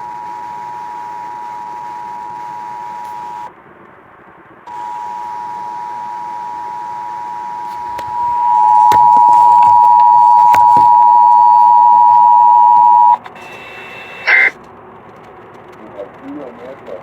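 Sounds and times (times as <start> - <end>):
clicks: 7.9 - 13.4
two-tone alert signal: 8.0 - 14.5
short high beep: 8.1 - 14.5.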